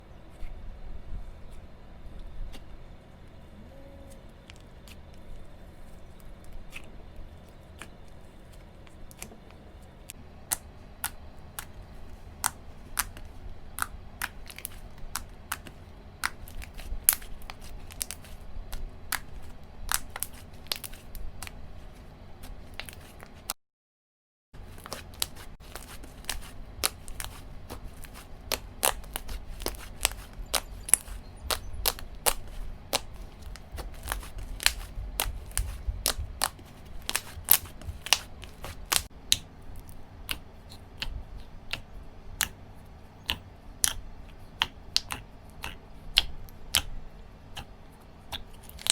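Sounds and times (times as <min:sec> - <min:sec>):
slime squished by hand: 0:10.5 - 0:21.6, 0:24.6 - 0:41.8, 0:43.2 - 0:46.9, 0:48.3 - 0:48.9.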